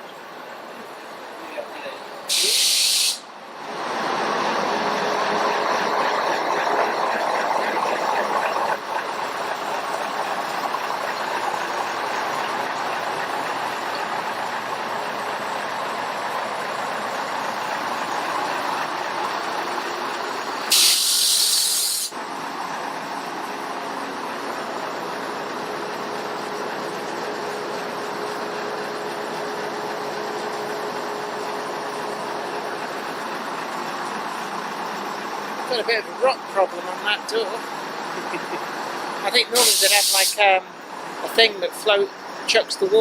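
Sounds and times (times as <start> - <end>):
steam locomotive hissing: 2.3 - 3.3, 20.7 - 22.2, 39.4 - 40.6.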